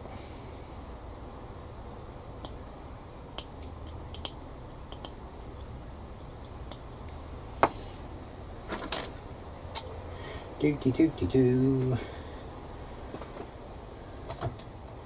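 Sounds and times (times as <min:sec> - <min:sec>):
plastic model parts clicking: 0:03.4 - 0:05.7.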